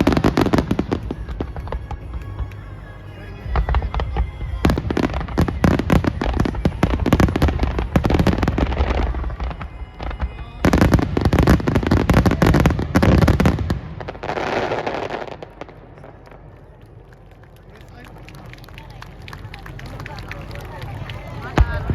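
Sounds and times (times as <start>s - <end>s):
fireworks crackling bursts: 0.0s - 21.9s
fireworks low booms: 3.4s - 16.9s.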